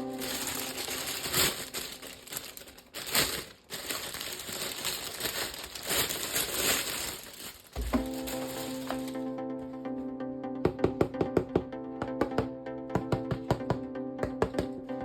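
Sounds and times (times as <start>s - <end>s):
packaging crinkling and rustling: 0.0s - 9.2s.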